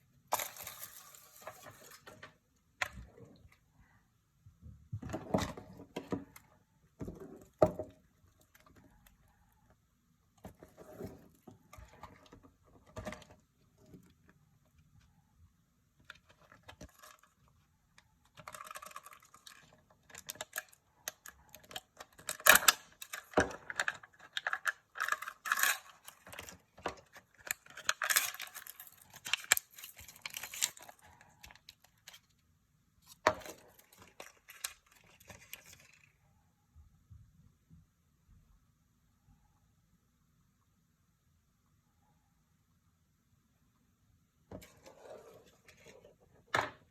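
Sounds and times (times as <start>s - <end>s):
wrapper crinkling: 27.3s - 32.3s.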